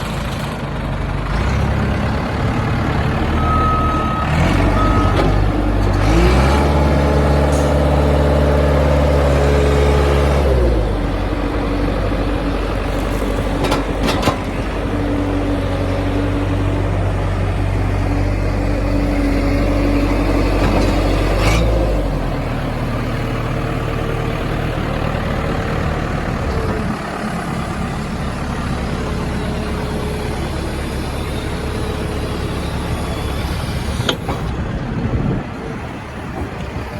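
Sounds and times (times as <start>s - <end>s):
diesel engine running and revving: 0.0s - 36.9s
short beeps: 3.4s - 5.3s.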